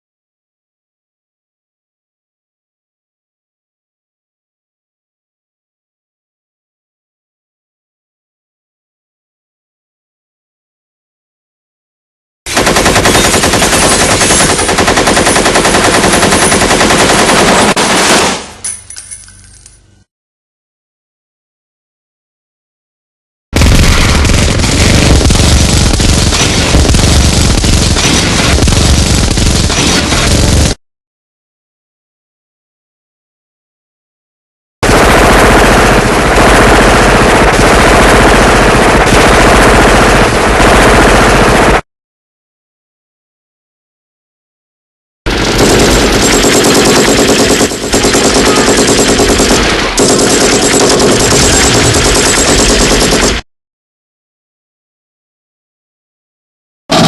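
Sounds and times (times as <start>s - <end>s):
machine gun firing: 12.5s - 18.6s, 23.6s - 30.8s, 34.8s - 41.8s, 45.3s - 53.4s
faint clinks: 18.6s - 20.0s
gunfire echo: 45.3s - 53.4s.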